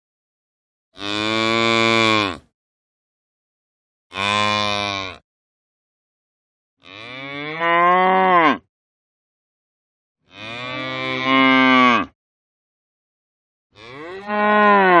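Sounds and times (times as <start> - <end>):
cow mooing: 1.0 - 2.4, 4.1 - 5.2, 6.8 - 8.7, 10.3 - 12.2, 13.8 - 15.0.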